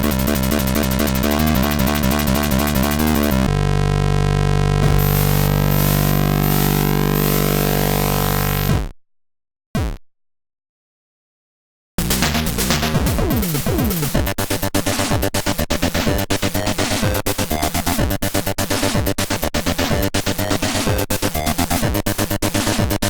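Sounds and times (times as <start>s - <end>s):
chiptune music: 0.0s - 4.2s, 12.0s - 18.6s.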